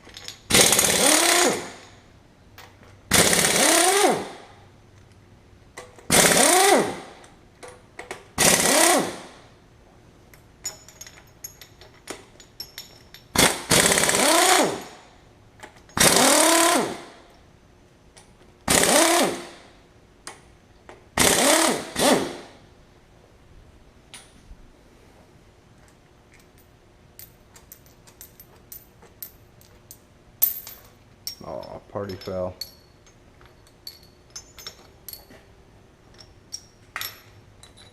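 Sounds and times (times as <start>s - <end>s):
impact wrench loosening bolts: 0.0s - 2.0s, 2.7s - 4.4s, 5.8s - 9.4s, 10.7s - 15.0s, 15.6s - 17.1s, 18.7s - 19.6s, 21.2s - 22.5s.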